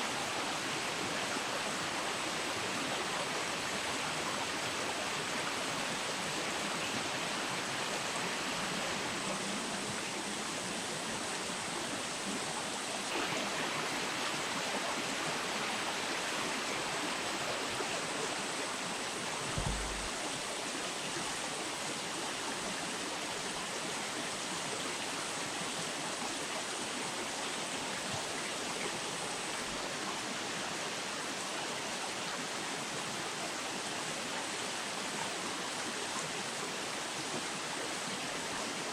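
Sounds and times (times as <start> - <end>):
river water flowing: 0.0 - 38.9
low thump: 19.5 - 20.2.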